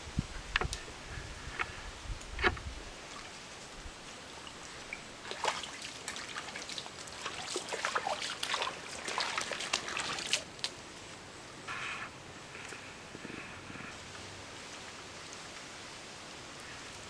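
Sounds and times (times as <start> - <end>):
creek water trickling: 0.1 - 17.0
small splashes and drips: 3.0 - 11.2.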